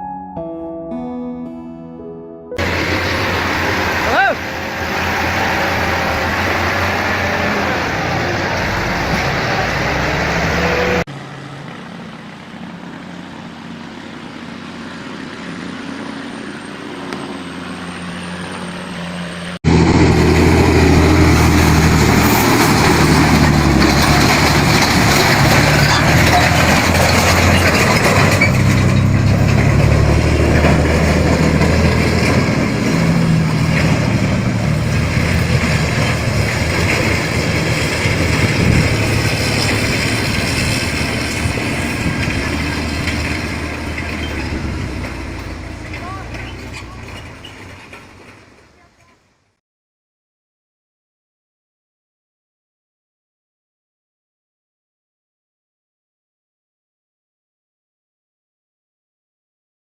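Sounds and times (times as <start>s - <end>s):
truck engine running: 2.6s - 49.0s
traffic: 2.6s - 49.6s.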